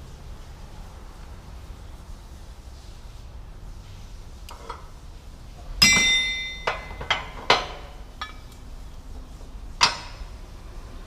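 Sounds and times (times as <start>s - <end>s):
hammer striking metal: 5.8s - 8.5s, 9.8s - 10.3s.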